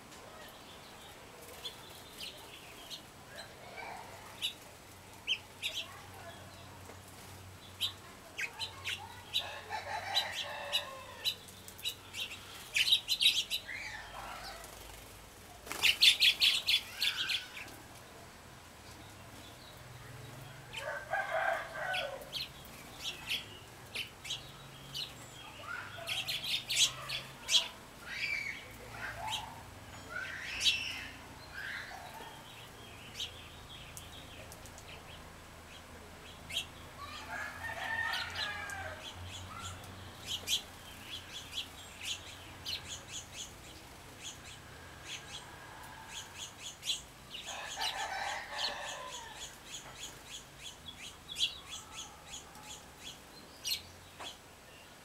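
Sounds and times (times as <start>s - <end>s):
songbirds chirping: 0.0s - 55.0s
rooster crowing: 9.4s - 11.4s, 20.7s - 22.4s, 37.0s - 39.2s, 47.5s - 49.6s.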